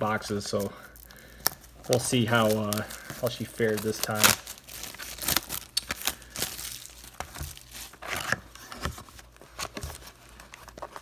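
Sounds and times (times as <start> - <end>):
plastic wrapping tearing and crinkling: 0.0 - 11.0.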